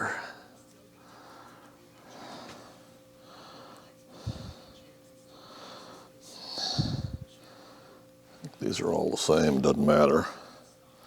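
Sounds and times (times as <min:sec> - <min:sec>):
man breathing through nose: 0:01.2 - 0:08.4.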